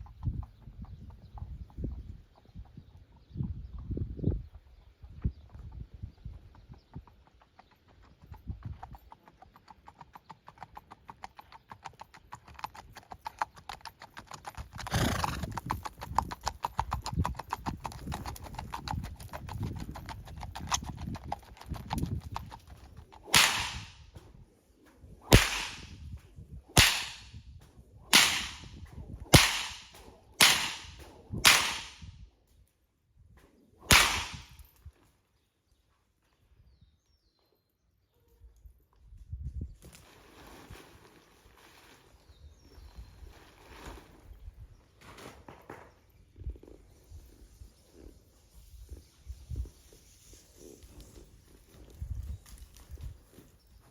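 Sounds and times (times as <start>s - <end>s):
horse hoofbeats: 5.1s - 24.2s
sharp swishing cracks: 23.3s - 24.0s, 25.3s - 26.1s, 26.8s - 27.4s, 28.1s - 32.1s, 33.9s - 34.6s.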